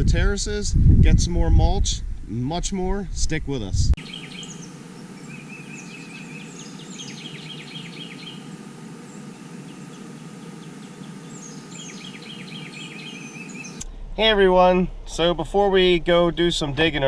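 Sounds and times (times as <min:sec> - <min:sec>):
low background noise: 0:03.4 - 0:17.0
songbirds chirping: 0:03.9 - 0:16.9.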